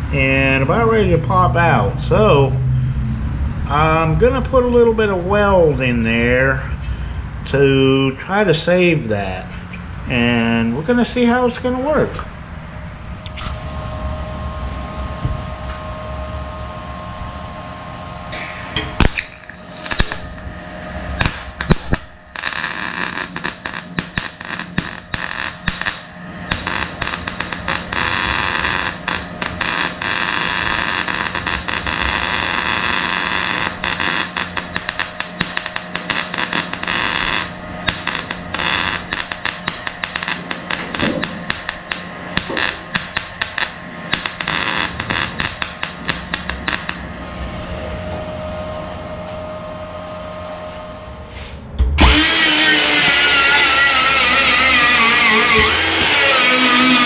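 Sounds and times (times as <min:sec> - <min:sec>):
steady hum: 0:00.0 - 0:57.0
welding arc crackling and sizzling: 0:18.3 - 0:48.1, 0:52.0 - 0:57.0.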